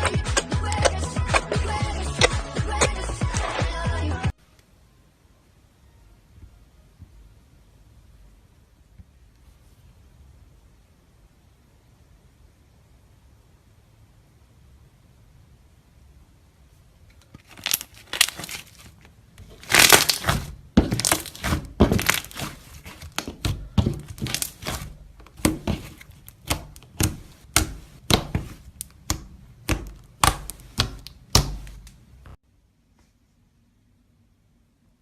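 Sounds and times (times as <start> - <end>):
slime squeezed crackling pops: 17.5 - 18.8, 19.6 - 31.8.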